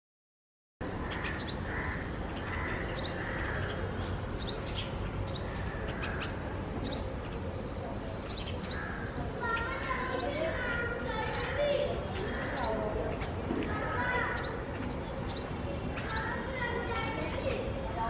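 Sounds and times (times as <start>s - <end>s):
low background noise: 0.8s - 18.0s.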